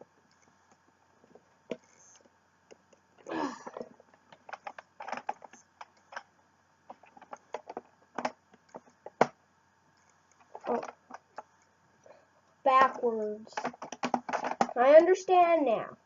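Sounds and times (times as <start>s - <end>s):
plastic clicks and rattles: 1.3s - 6.3s, 6.9s - 9.4s, 10.0s - 11.7s, 13.6s - 14.8s.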